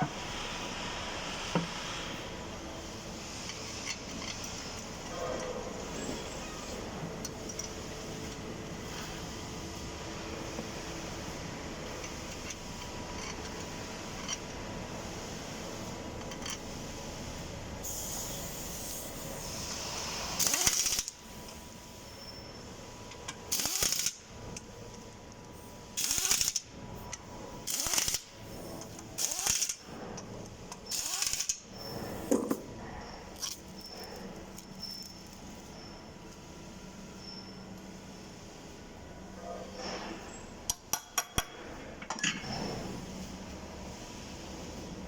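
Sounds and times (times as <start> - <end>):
steady mechanical hum: 0.0 - 45.0
loud bursts of tool noise: 20.4 - 21.1, 23.5 - 24.2, 26.0 - 26.6, 27.6 - 28.4, 29.2 - 29.8, 30.9 - 31.6.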